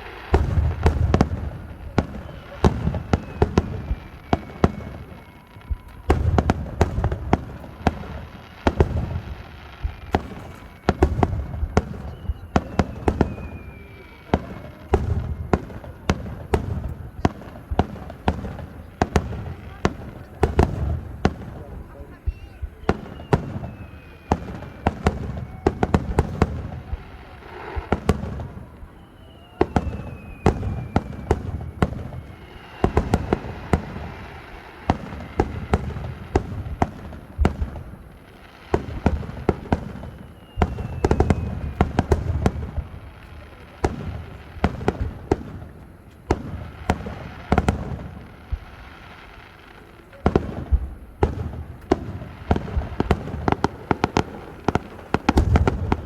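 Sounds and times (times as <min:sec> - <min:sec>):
falling firework whistle: 0:00.0 - 0:56.0
fireworks bangs and booms: 0:00.0 - 0:56.0.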